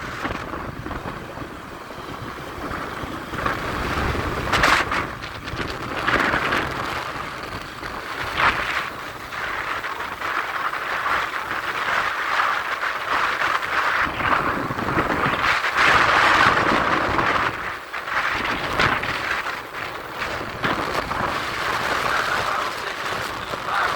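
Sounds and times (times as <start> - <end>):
wind gusting on microphone: 0.0 - 23.9
rain falling: 15.2 - 23.9.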